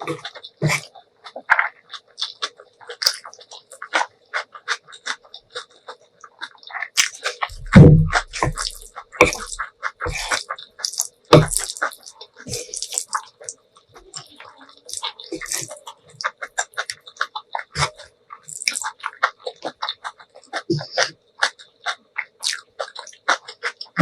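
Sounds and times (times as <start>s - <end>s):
slurping and chewing noodles: 0.0s - 24.0s
heavy low thump: 7.5s - 8.6s.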